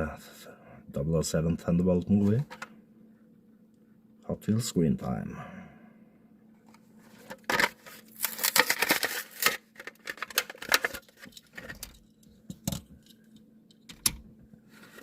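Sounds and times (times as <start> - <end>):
plastic package crackling: 7.4 - 11.8.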